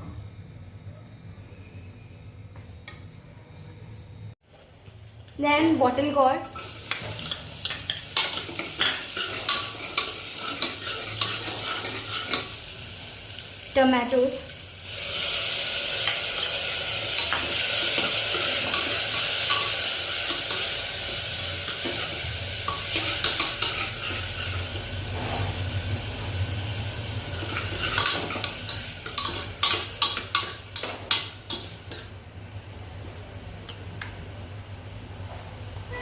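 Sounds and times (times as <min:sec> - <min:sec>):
vegetables sizzling in a pan: 0:05.5 - 0:32.6
spatula tapping and scraping pan: 0:27.4 - 0:32.1.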